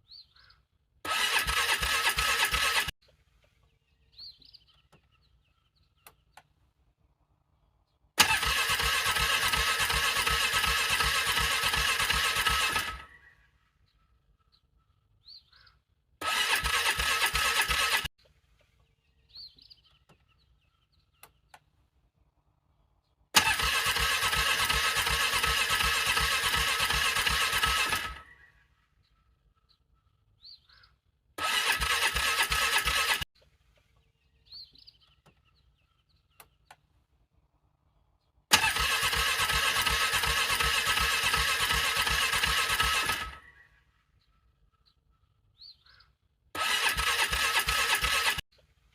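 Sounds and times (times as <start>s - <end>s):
starter motor cranking engine: 1.0s - 3.0s, 8.2s - 13.2s, 16.2s - 18.1s, 23.3s - 28.4s, 31.4s - 33.3s, 38.5s - 43.5s, 46.6s - 48.5s.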